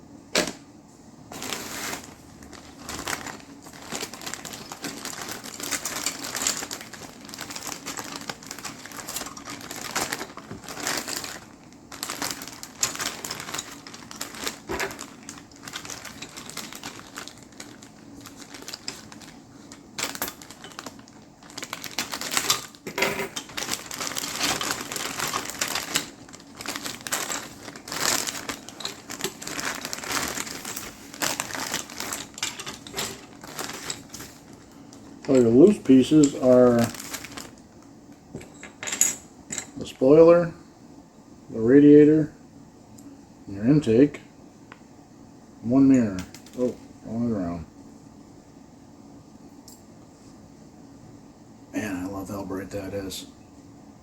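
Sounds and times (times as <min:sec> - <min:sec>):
plastic bags crinkling: 0:01.3 - 0:39.0, 0:46.3 - 0:46.8
plastic parts clicking and rattling: 0:02.6 - 0:19.4, 0:20.0 - 0:34.6.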